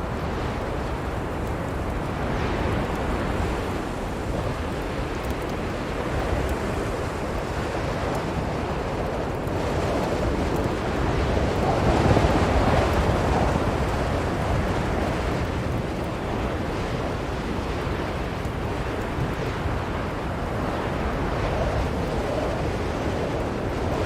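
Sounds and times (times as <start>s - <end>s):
blizzard wind blowing: 0.0s - 24.0s.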